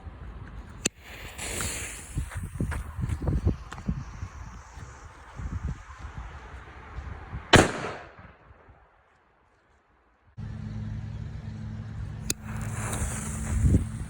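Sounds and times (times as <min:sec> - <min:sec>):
firecracker bang: 0:07.6 - 0:08.3
steady low hum: 0:10.4 - 0:14.0.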